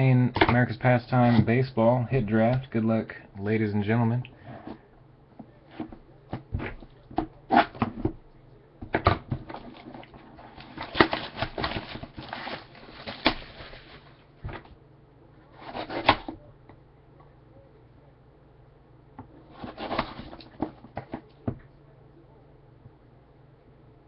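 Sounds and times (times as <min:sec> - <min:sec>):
wrapping rustling and crinkling: 0:09.5 - 0:14.3.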